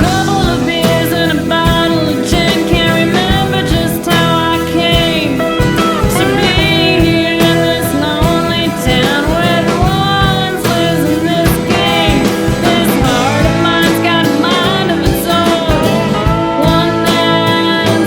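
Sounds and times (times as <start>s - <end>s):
guitar: 0.0s - 18.0s
person singing: 0.0s - 18.0s
music beat: 0.8s - 18.0s.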